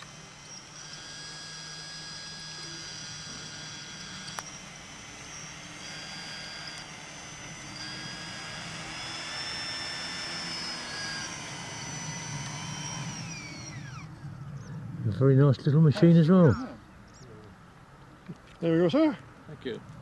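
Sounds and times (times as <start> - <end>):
model plane motor whining: 0.0 - 14.7.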